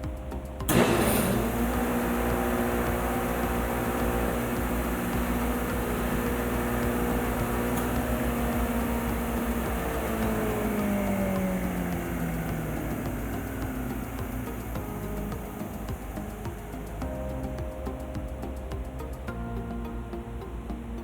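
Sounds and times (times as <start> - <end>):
jointer cutterhead humming and whirring: 0.7 - 17.1.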